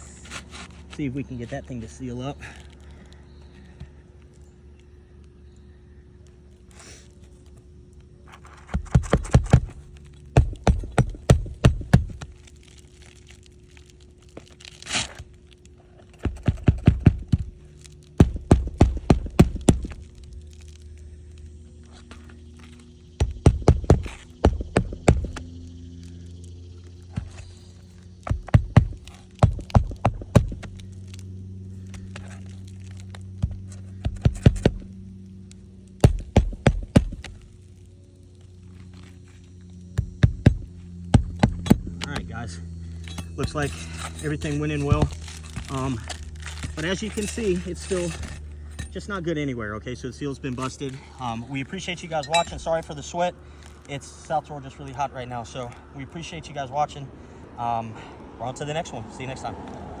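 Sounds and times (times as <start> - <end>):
steady low hum: 0.0 - 60.0
hammer striking roofing nails: 8.7 - 12.3, 16.2 - 20.1, 23.2 - 25.5, 28.2 - 30.9, 33.4 - 35.0, 36.0 - 37.5, 40.0 - 42.1.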